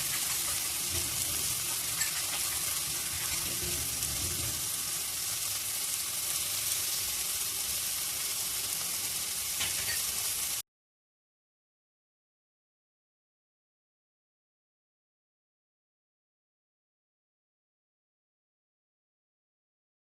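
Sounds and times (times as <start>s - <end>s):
small oil crackles: 0.0s - 10.4s
ingredients sizzling in hot oil: 0.0s - 10.6s.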